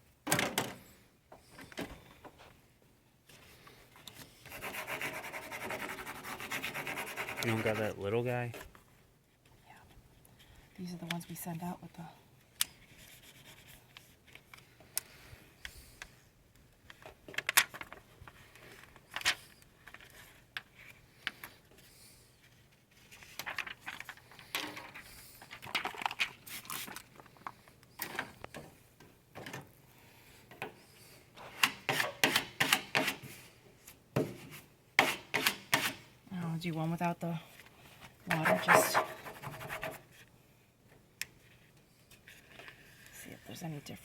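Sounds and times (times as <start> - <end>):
hands rubbing vinyl and paper: 4.5 - 8.0, 38.3 - 40.1.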